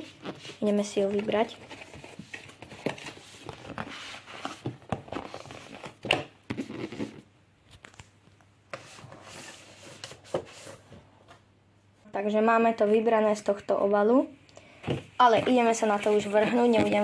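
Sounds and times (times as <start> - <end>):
cardboard packaging rustling and scraping: 0.0 - 7.3, 8.8 - 11.4.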